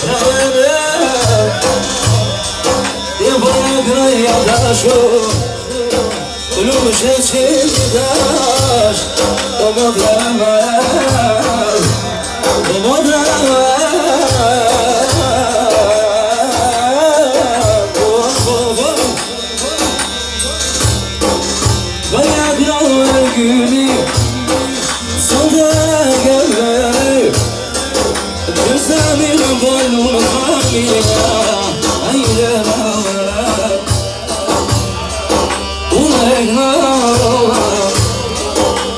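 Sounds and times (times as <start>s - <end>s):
person singing folk melody: 0.0s - 20.8s, 22.0s - 38.9s
steady drum beat: 0.0s - 38.9s.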